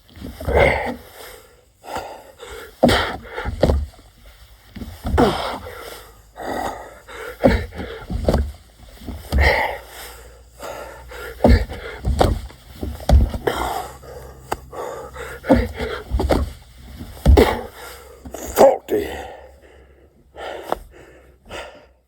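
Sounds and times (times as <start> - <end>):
man breathing hard: 0.0 - 22.0
dull thuds on ground: 1.9 - 5.9, 7.4 - 9.8, 11.1 - 14.7, 15.4 - 18.6.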